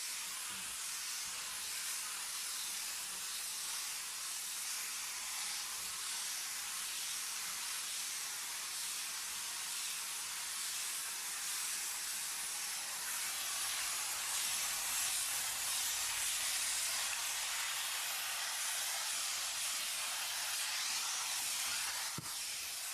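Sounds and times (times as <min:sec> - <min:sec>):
cleaning machine hissing: 0:00.0 - 0:22.9.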